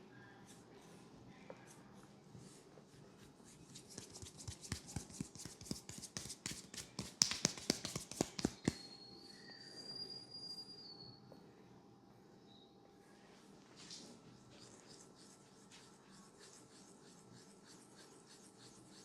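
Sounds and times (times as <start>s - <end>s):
hands tapping and slapping: 4.0s - 8.8s.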